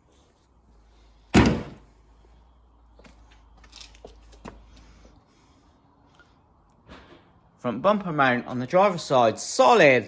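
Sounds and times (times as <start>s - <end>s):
loud thunk against car body: 1.4s - 1.9s.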